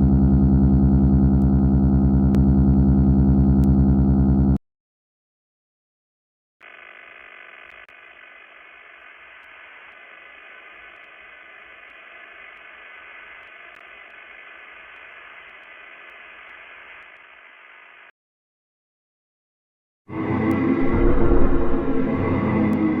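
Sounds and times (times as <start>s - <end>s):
static hiss: 6.6s - 18.1s.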